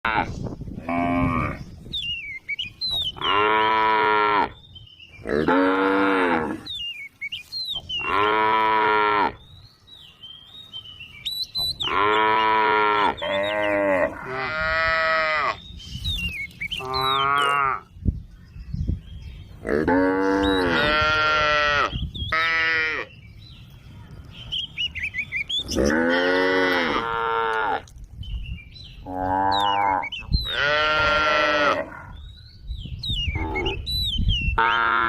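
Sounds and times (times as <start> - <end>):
cows mooing: 3.1 - 4.6, 5.2 - 6.7, 8.0 - 9.4, 11.8 - 15.6, 16.8 - 17.8, 19.6 - 23.1, 25.6 - 27.9, 29.0 - 32.2.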